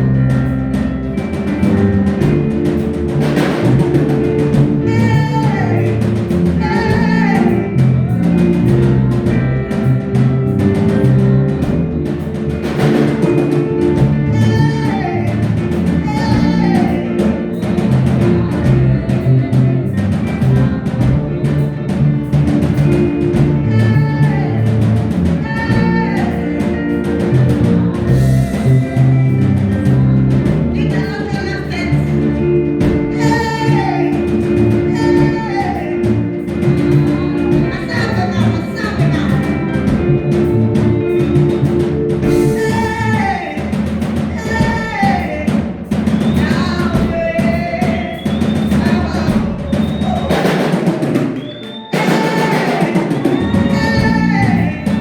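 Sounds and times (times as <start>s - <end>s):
band with drums and bass: 0.0s - 55.0s
singing: 25.4s - 32.0s, 42.3s - 55.0s.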